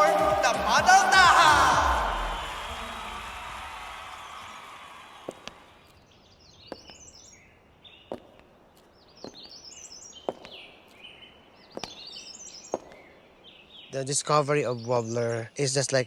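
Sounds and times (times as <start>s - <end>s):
music: 0.0s - 3.0s
voices: 0.0s - 5.8s
songbird singing: 4.0s - 16.0s
sharp bird ticks: 5.4s - 7.4s, 8.1s - 13.3s.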